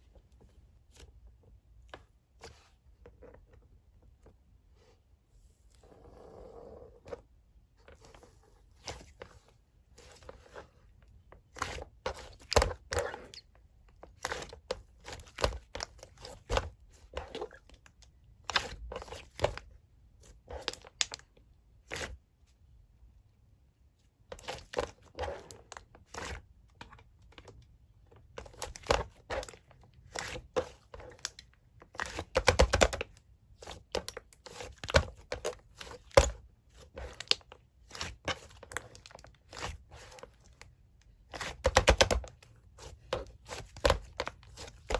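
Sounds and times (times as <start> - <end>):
hands squishing slime: 28.2 - 44.9.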